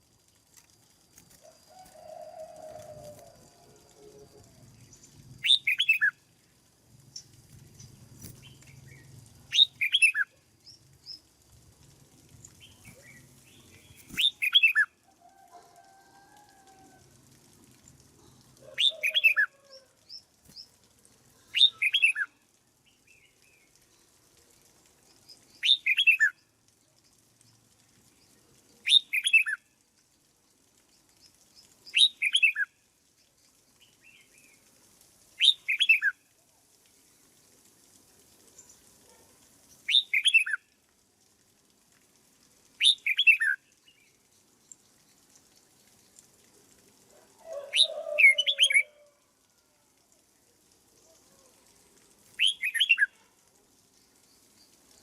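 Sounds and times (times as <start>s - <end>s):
bird singing: 4.8s - 6.2s, 47.5s - 48.9s.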